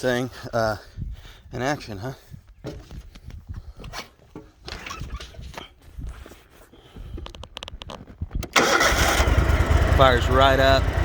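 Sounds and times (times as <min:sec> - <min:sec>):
mower engine starting: 0:08.4 - 0:11.0.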